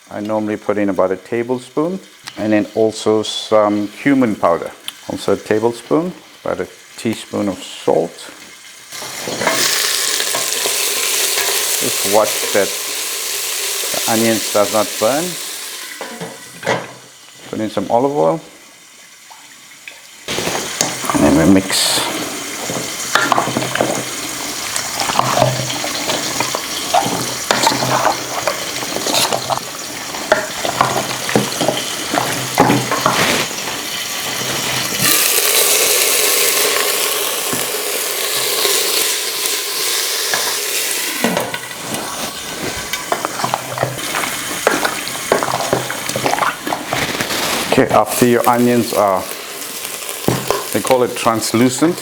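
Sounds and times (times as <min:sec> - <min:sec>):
onions and spices sizzling in oil: 0:01.7 - 0:52.0
loud steady hiss: 0:20.3 - 0:45.9, 0:47.2 - 0:52.0
utensil clicking and scraping pot: 0:22.1 - 0:33.5, 0:40.2 - 0:48.2, 0:49.8 - 0:51.0.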